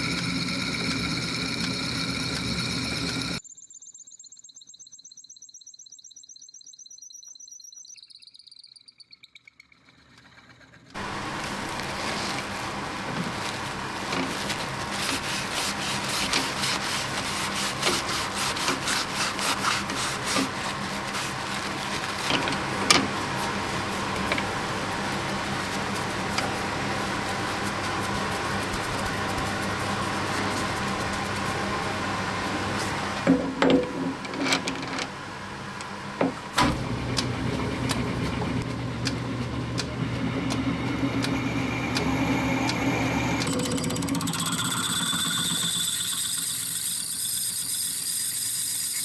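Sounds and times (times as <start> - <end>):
power tool humming: 0.0 - 3.4, 11.0 - 49.0
rapid scraping clicks on wood: 10.9 - 33.4.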